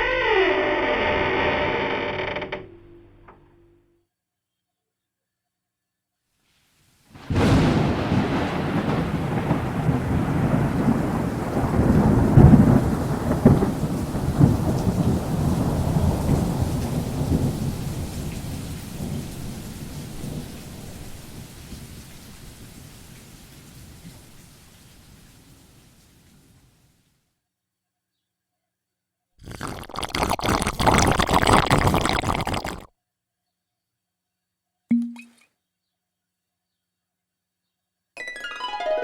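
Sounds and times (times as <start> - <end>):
thunder crack and rolling rumble: 7.2 - 24.4.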